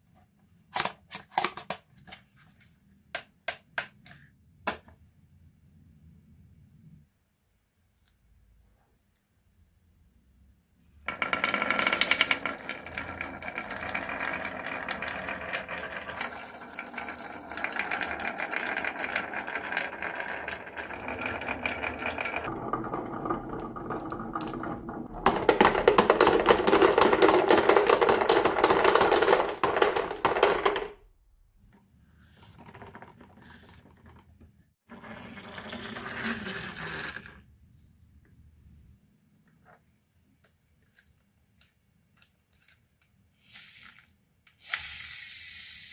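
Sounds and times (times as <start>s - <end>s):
marbles rattling down track: 11.1s - 31.0s.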